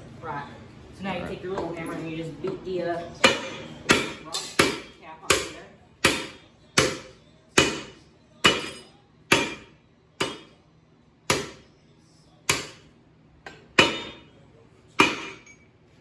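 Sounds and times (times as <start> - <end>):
small hammer striking metal: 3.2 - 10.6, 13.5 - 14.2.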